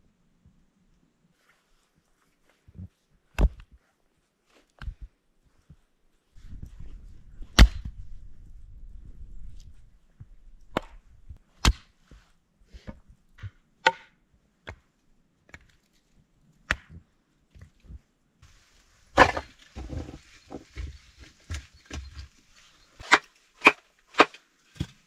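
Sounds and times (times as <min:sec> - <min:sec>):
axe chopping firewood: 0:07.6 - 0:08.0, 0:11.6 - 0:11.9, 0:13.4 - 0:14.8, 0:19.2 - 0:20.9, 0:23.0 - 0:25.0.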